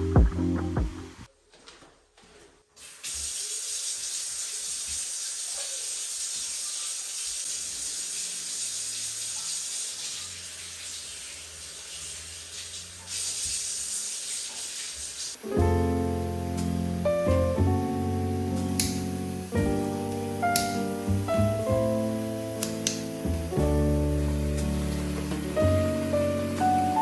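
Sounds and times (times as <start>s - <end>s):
tap water running into sink: 2.8s - 15.7s.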